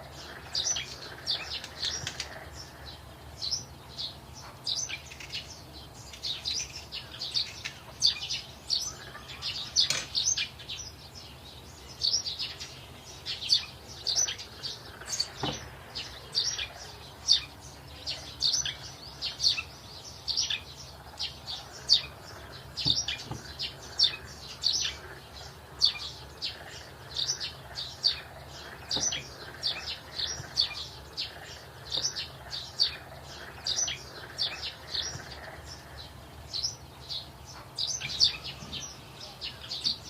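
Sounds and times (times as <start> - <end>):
small birds chirping: 0.0 - 40.0.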